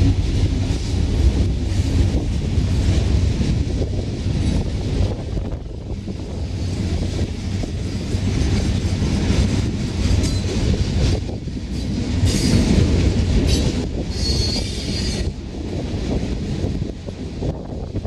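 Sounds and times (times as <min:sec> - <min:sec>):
freight train rumbling past: 0:00.0 - 0:18.0
wind buffeting microphone: 0:00.0 - 0:18.0
train wheels squealing: 0:10.0 - 0:10.7, 0:11.7 - 0:12.8, 0:13.4 - 0:15.4.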